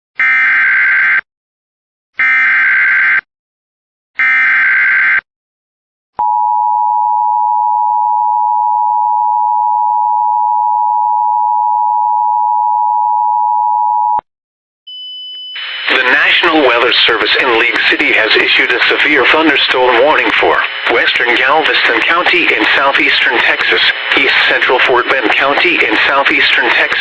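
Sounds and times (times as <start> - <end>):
digital data bursts: 15.9 - 27.0.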